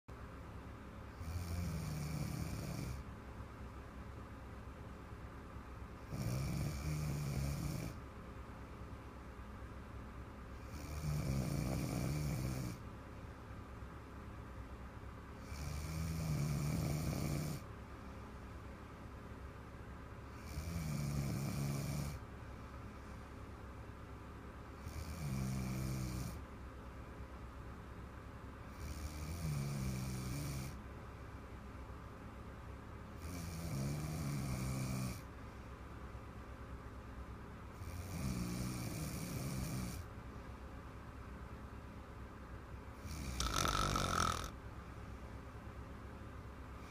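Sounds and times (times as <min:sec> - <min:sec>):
girl snoring: 0:01.2 - 0:03.0, 0:06.0 - 0:08.0, 0:10.6 - 0:12.8, 0:15.4 - 0:17.6, 0:20.3 - 0:22.2, 0:24.8 - 0:26.4, 0:28.8 - 0:30.8, 0:33.2 - 0:35.2, 0:37.8 - 0:40.0, 0:43.0 - 0:44.6
quiet breathing: 0:15.3 - 0:19.3, 0:20.2 - 0:23.9, 0:46.6 - 0:46.9.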